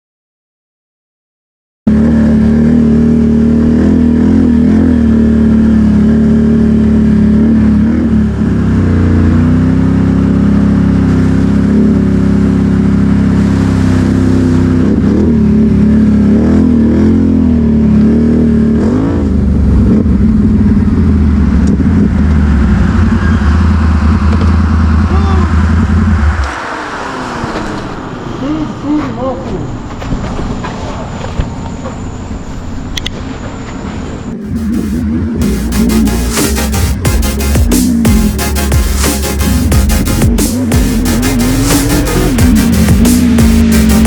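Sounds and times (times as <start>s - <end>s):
quad bike engine revving: 1.9s - 28.6s, 34.4s - 44.0s.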